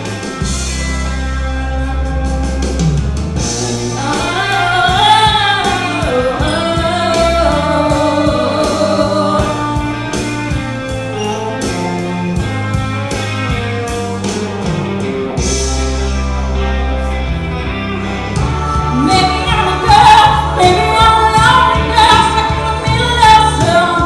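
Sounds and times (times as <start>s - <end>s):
rock band drums and guitar: 0.0s - 24.0s
woman singing wordless vocals: 4.0s - 10.1s, 18.9s - 24.0s.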